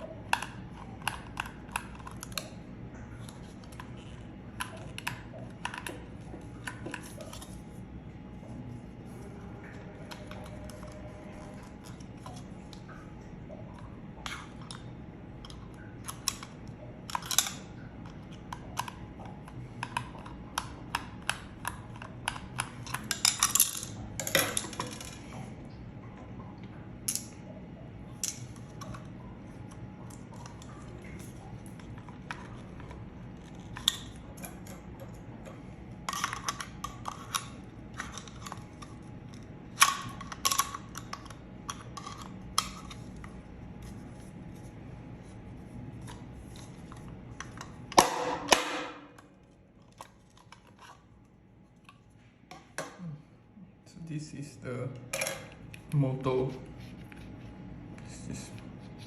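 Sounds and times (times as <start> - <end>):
plastic parts clicking and clattering: 36.1 - 43.2.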